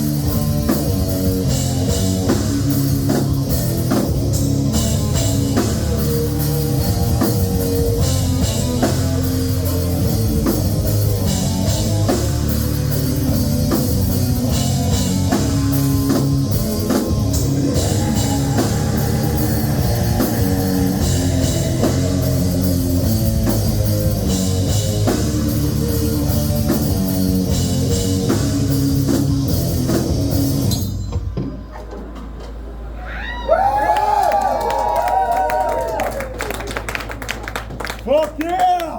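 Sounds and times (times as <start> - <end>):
metal band playing live: 0.0 - 31.2.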